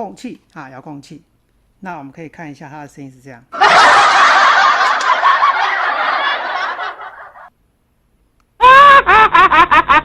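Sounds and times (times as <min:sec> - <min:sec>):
canned crowd laughter: 0:03.6 - 0:07.5.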